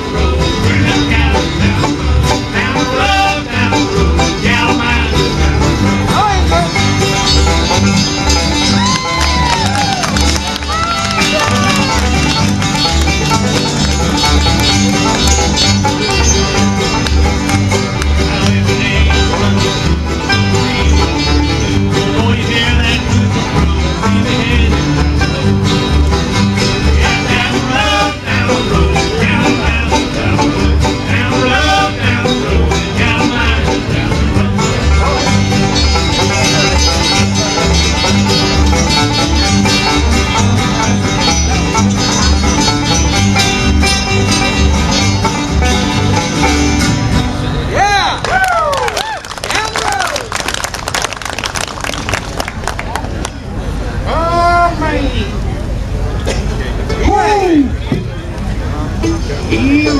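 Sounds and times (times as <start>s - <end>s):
bass beat: 0.0s - 47.7s
banjo: 0.0s - 47.8s, 55.4s - 59.9s
guitar: 0.0s - 59.9s.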